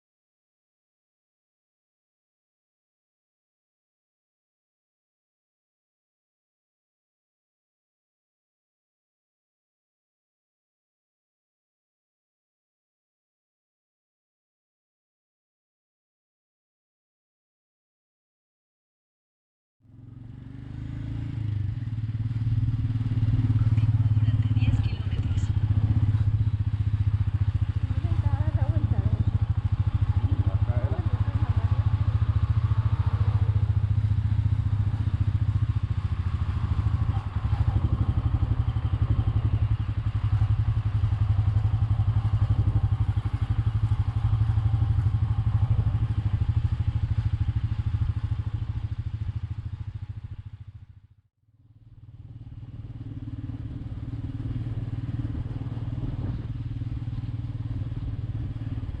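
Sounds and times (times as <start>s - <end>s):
motorcycle engine running: 19.8s - 59.0s.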